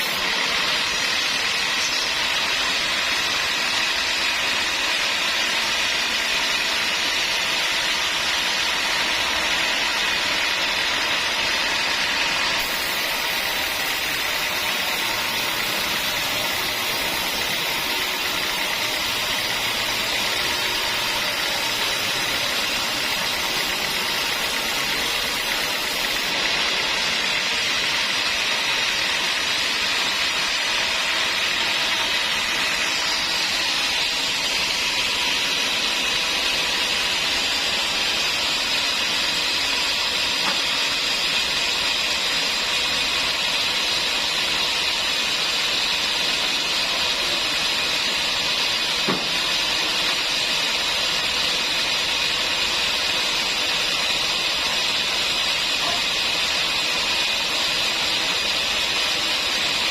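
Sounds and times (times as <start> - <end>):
saw running with high hiss: 0.0 - 59.9
brief knock: 49.1 - 49.3.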